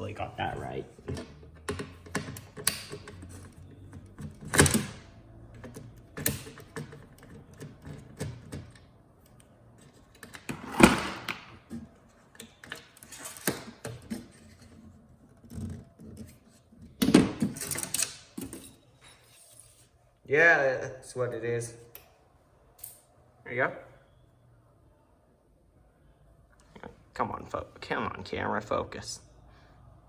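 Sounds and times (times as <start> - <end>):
clicks and knocks of tools and parts: 1.0 - 19.6.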